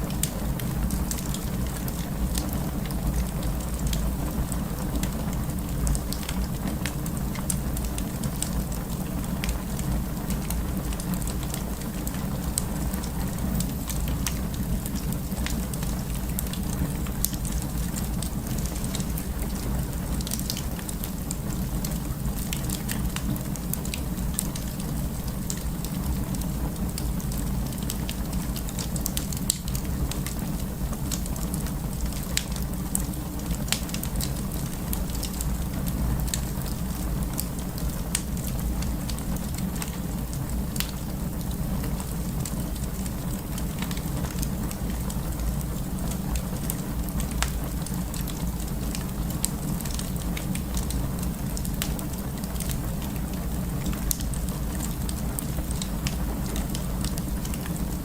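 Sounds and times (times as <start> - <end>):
wood fire crackling: 0.0 - 58.0.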